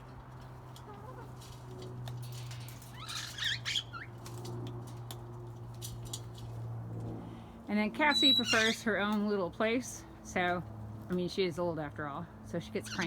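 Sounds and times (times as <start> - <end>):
parrots chirping: 2.9 - 4.1, 8.1 - 8.8.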